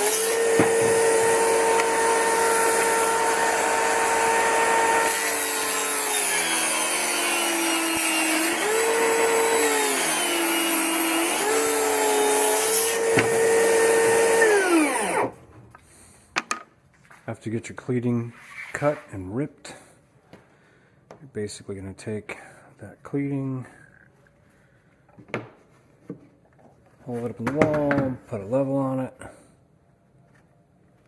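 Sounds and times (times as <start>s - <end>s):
table saw cutting wood: 0.0s - 15.4s.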